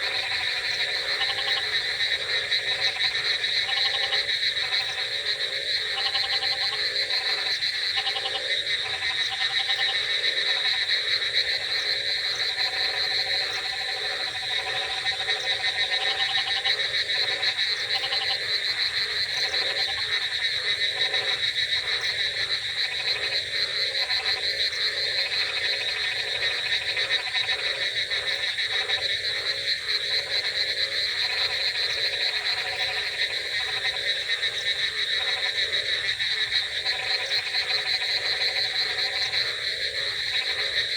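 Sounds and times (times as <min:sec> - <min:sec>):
frogs croaking: 0:00.0 - 0:40.9.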